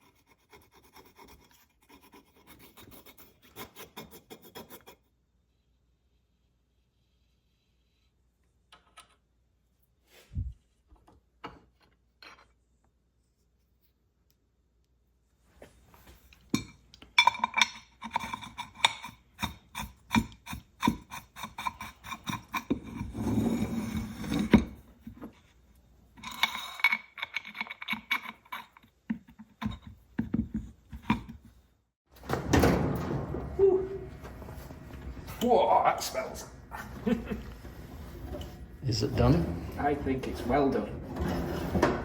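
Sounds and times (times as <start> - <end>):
metal tools clicking and scraping: 26.2 - 29.9.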